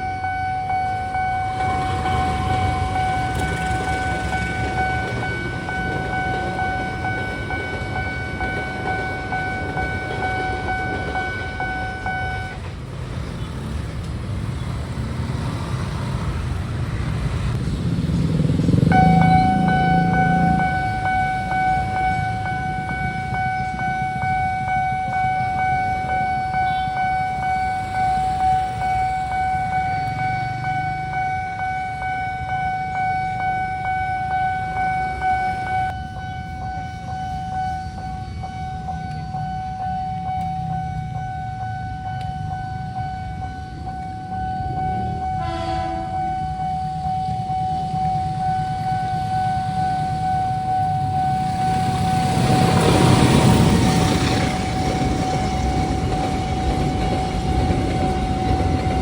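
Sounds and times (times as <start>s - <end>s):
high steady crossing siren: 0.0s - 59.0s
train rumbling past: 0.0s - 59.0s
train horn blast: 18.8s - 21.5s, 45.1s - 46.6s.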